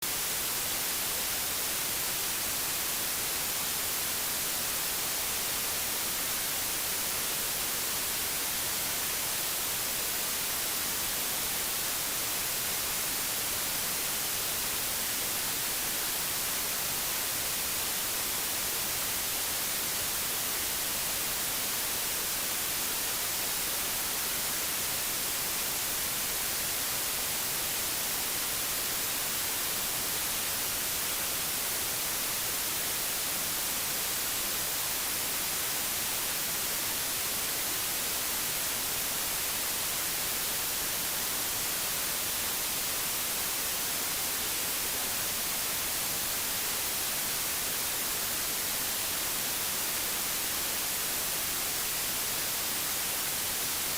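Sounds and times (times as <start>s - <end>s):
white noise hiss: 0.0s - 53.9s.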